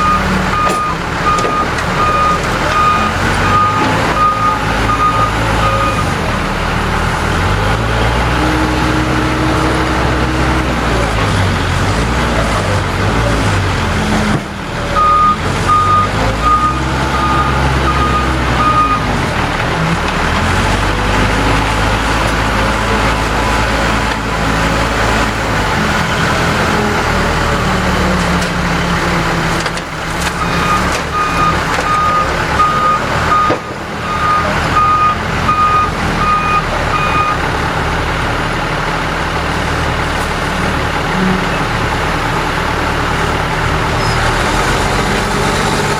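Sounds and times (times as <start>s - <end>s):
backup alarm beeping: 0.0s - 6.0s, 15.0s - 19.0s
diesel engine working under load: 0.0s - 45.9s.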